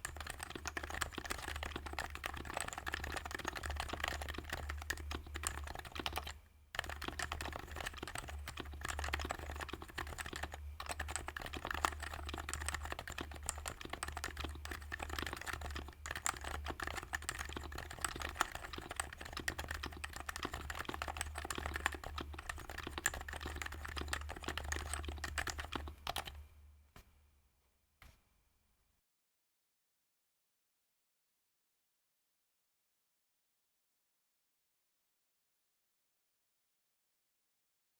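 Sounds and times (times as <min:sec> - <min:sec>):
fast keyboard typing: 0:00.0 - 0:26.4.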